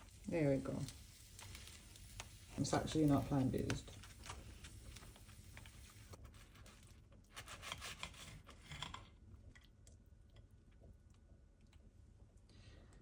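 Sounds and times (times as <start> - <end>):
knife sawing through wrap: 7.3 - 8.5.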